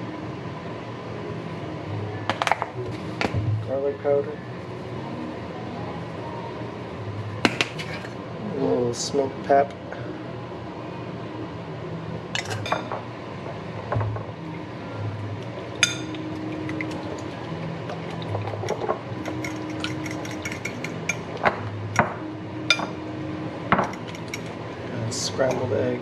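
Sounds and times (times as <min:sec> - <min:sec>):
soft background music: 0:00.0 - 0:26.0
utensil clinking against bowl: 0:18.1 - 0:21.3, 0:25.4 - 0:25.7.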